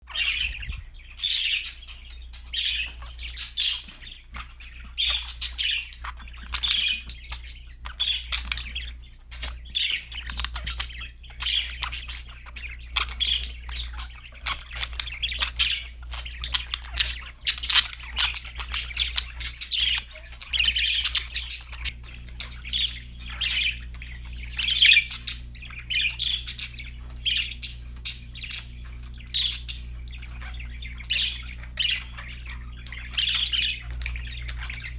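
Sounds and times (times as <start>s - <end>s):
budgerigars chirping: 0.0s - 34.9s
steady low hum: 0.0s - 34.9s.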